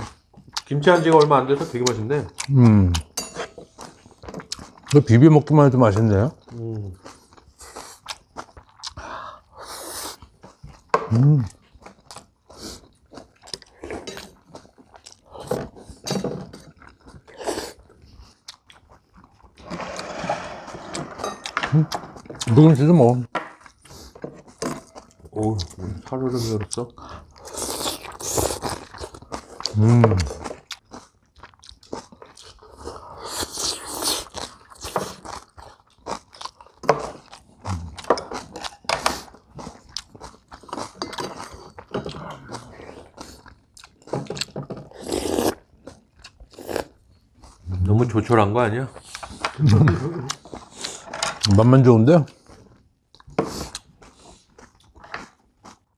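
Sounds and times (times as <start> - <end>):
chewing and crunching food: 0.0 - 55.9
crunchy chewing: 23.6 - 47.8.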